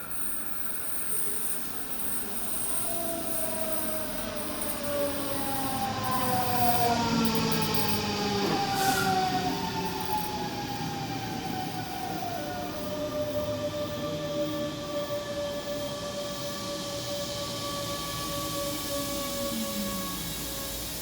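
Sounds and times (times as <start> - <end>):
train wheels squealing: 0.0 - 21.0
short hiss: 8.4 - 9.3.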